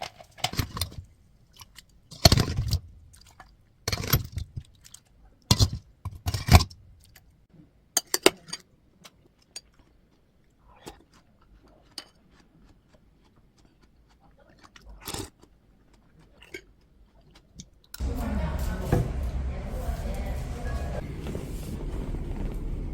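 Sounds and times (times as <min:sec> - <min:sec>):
person crunching and chewing: 0:09.2 - 0:18.0.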